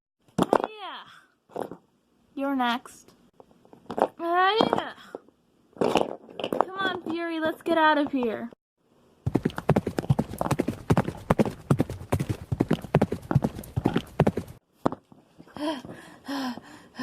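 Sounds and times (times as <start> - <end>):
galloping horse hoofbeats: 9.3 - 15.0.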